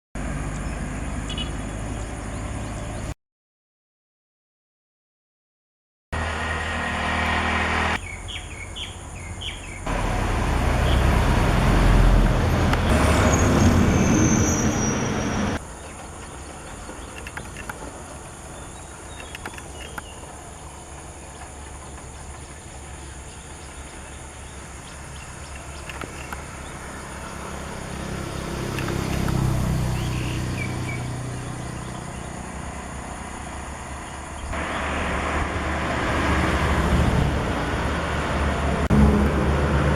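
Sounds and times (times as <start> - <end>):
road traffic rumble: 0.2 - 3.2, 6.2 - 39.9
bird chirps: 0.6 - 3.1, 8.0 - 9.9, 14.0 - 20.4, 29.8 - 32.5.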